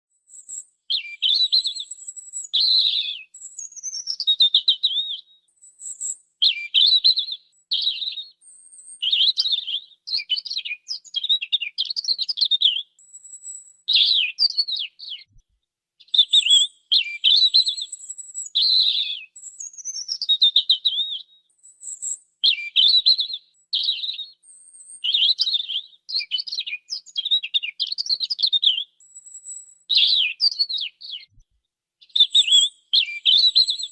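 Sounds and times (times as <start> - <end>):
robin singing: 0.2 - 15.3, 16.0 - 31.3, 32.0 - 33.9.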